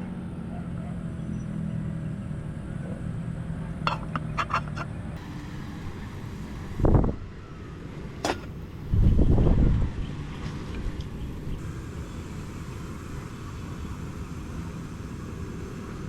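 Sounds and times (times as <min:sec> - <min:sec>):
wind buffeting microphone: 0:05.9 - 0:16.0.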